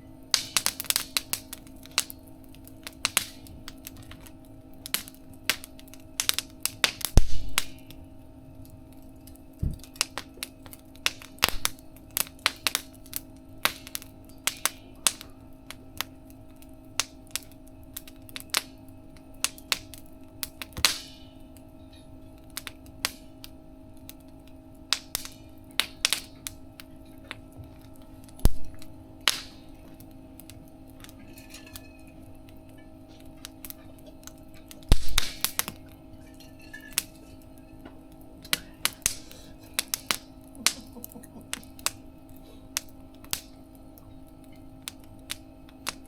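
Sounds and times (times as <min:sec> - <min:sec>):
firewood crackling and popping: 0:00.0 - 0:46.0
steady low hum: 0:00.0 - 0:46.0.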